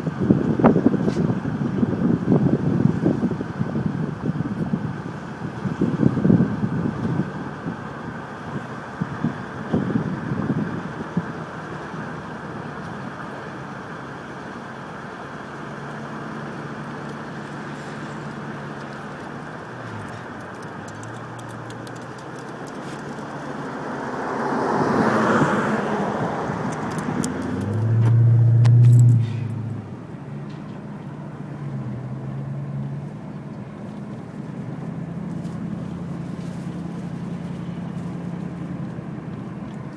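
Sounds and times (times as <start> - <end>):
traffic noise: 0.0 - 39.9
vehicle passing: 16.0 - 39.8
low engine drone: 25.7 - 39.9.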